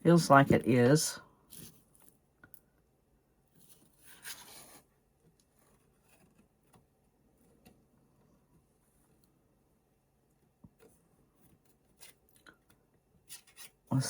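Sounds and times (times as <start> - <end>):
rustling scrape: 3.5 - 4.9.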